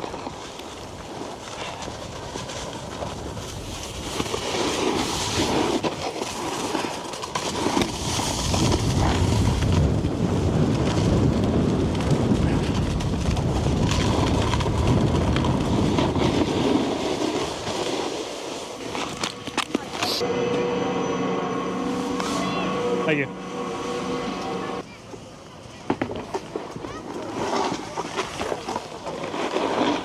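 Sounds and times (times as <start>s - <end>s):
snowboard scraping over snow: 0.0s - 20.4s, 26.5s - 30.0s
wind on microphone: 8.4s - 17.7s.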